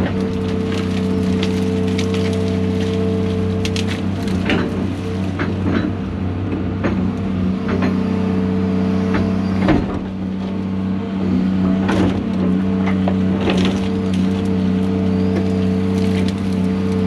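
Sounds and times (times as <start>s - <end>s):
wood cracking and snapping: 0.0s - 5.9s, 11.9s - 17.0s
excavator diesel engine running: 0.0s - 17.0s.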